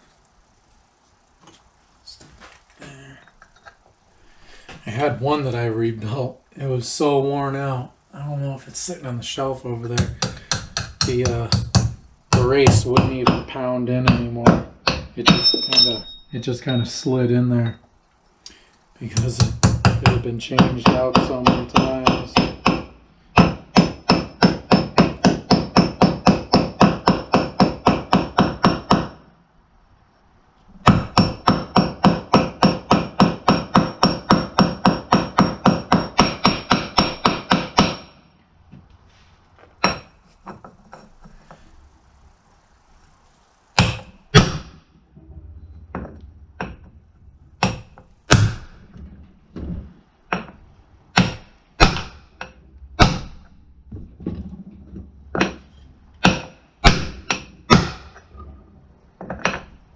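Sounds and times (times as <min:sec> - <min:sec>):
hammer blows on metal: 0:10.0 - 0:17.0.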